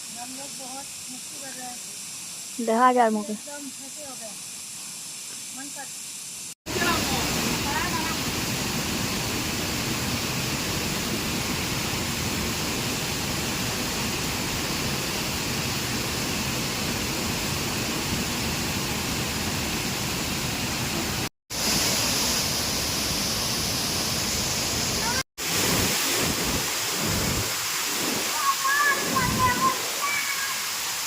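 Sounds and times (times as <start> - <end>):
waterfall rushing: 6.7 - 31.0.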